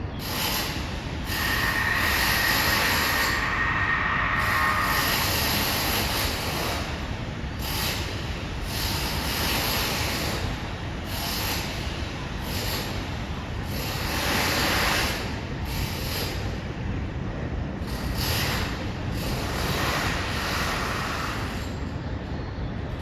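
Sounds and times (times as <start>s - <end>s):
hissing grinding bursts: 0.2s - 6.3s.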